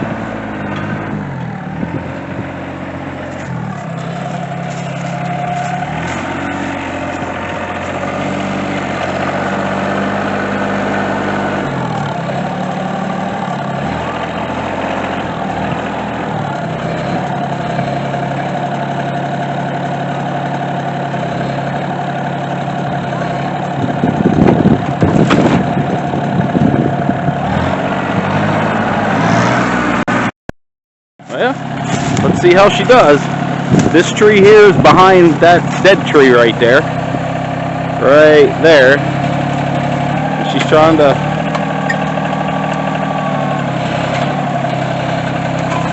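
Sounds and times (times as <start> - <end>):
tractor diesel engine running: 0.0 - 30.3, 31.2 - 45.9
loud knocks and crashes: 25.0 - 25.7.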